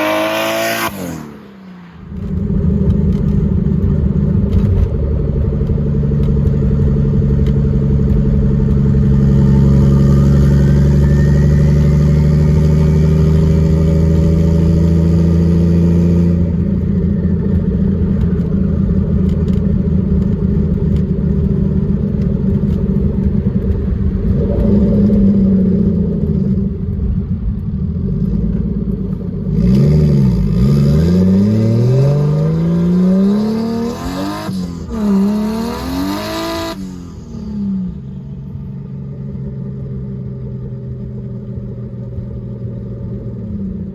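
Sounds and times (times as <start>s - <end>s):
car engine accelerating and revving: 0.0s - 38.5s
turbo whistle: 9.4s - 12.7s.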